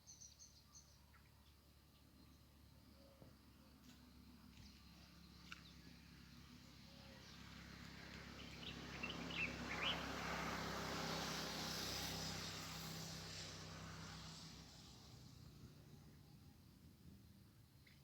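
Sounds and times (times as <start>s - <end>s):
vehicle passing: 7.3s - 16.2s
small birds chirping: 8.1s - 10.1s.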